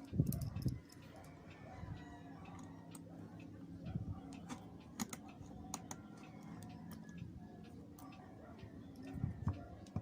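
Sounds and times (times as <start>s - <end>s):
light clicks of handled tools: 0.0s - 1.8s
low background hum: 0.0s - 10.0s.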